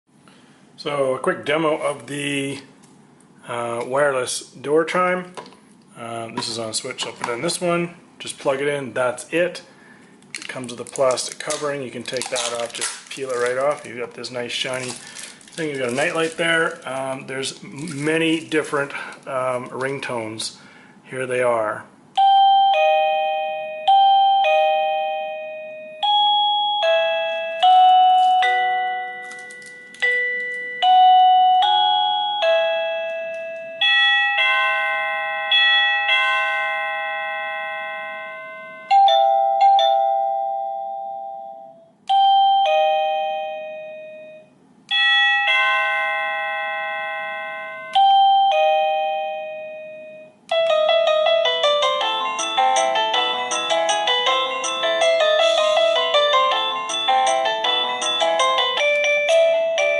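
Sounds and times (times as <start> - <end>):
electronic door chime melodies: 22.2 - 59.9.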